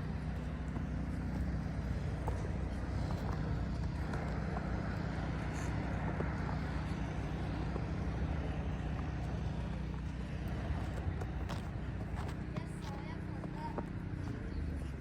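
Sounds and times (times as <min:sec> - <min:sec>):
road noise: 0:00.0 - 0:15.0
vehicle engine rumbling: 0:00.0 - 0:15.0.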